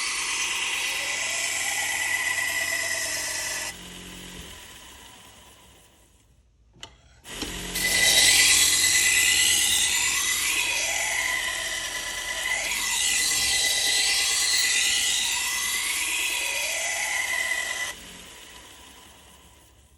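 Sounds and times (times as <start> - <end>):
belt sander grinding steel: 0.0 - 5.7, 7.3 - 19.8.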